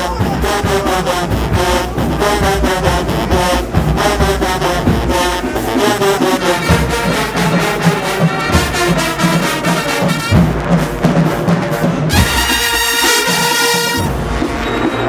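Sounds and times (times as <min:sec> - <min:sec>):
brass section playing chords: 0:00.0 - 0:15.0
steady drum beat: 0:00.0 - 0:15.0.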